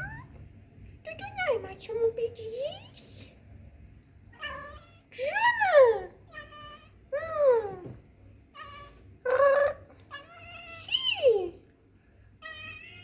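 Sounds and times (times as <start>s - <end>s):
cat meowing: 6.3s - 7.0s, 8.6s - 9.0s, 10.1s - 11.0s, 12.4s - 13.0s.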